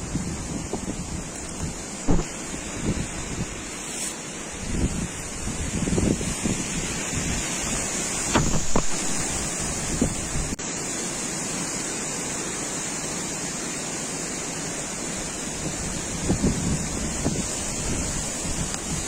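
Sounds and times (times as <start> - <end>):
strong wind buffeting microphone: 0.0 - 10.6, 15.3 - 19.0.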